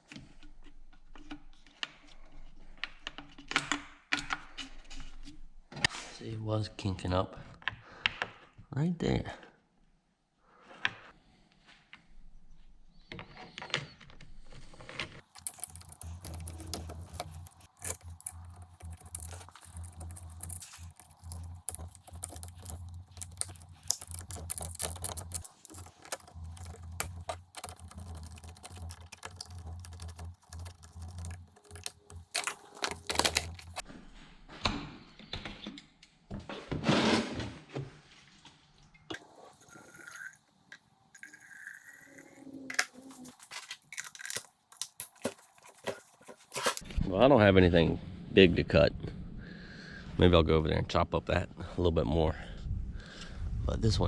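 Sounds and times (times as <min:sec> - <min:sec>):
small parts and tools clicking: 0:15.2 - 0:33.8, 0:39.2 - 0:40.4, 0:41.2 - 0:46.8
parts clattering: 0:15.3 - 0:33.8, 0:41.2 - 0:46.8.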